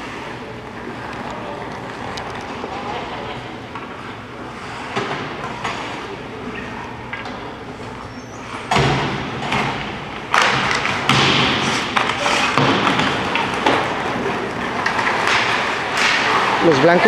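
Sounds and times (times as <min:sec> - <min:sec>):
puck and sticks hitting boards: 0:04.9 - 0:07.9, 0:08.5 - 0:17.0
skates scraping on ice: 0:10.4 - 0:17.0.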